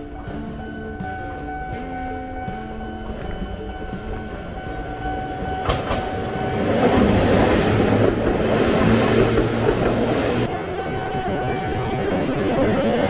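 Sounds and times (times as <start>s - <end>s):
train wheels on rails: 2.4s - 11.3s.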